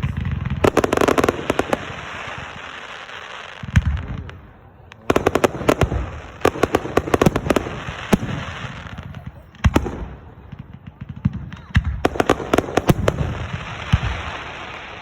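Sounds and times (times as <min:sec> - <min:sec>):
fireworks crackling hiss: 0:00.0 - 0:15.0
sharp firework bangs and crackles: 0:00.0 - 0:15.0.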